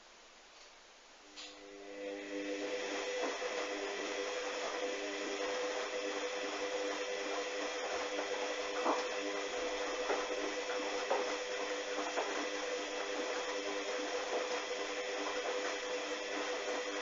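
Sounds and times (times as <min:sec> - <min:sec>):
washing machine motor hum: 0:01.2 - 0:17.0.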